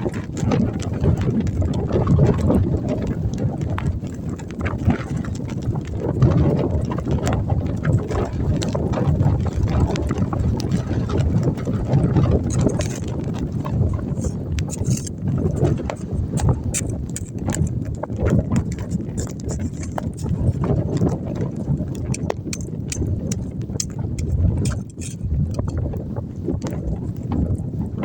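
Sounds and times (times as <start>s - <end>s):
wind buffeting microphone: 0.0s - 28.0s
short clicks and crunches: 12.2s - 13.2s, 14.1s - 21.2s, 22.0s - 25.8s.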